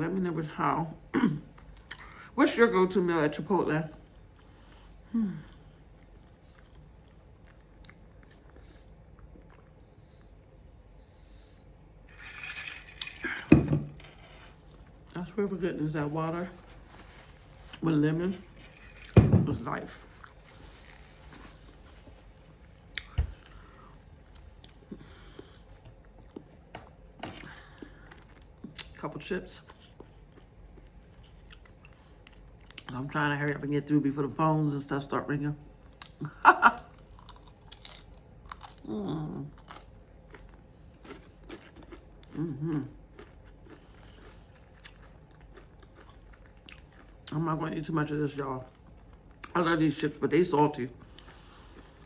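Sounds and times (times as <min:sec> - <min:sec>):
person chewing: 0:05.6 - 0:09.8, 0:20.0 - 0:26.7, 0:27.3 - 0:29.0, 0:29.6 - 0:32.9, 0:36.0 - 0:47.4, 0:51.0 - 0:52.0
chips crunching while chewed: 0:12.1 - 0:14.5, 0:36.0 - 0:47.4.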